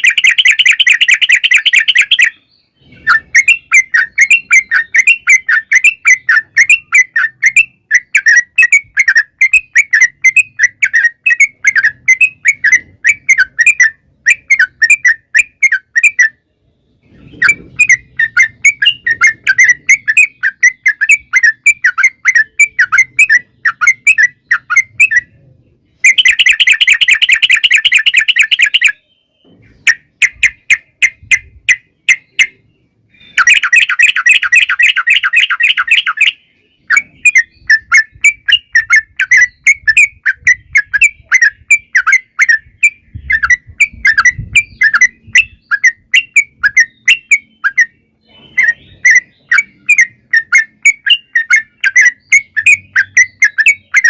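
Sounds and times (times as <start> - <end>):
bulbul rattling trill: 0.0 - 2.4, 26.0 - 29.0.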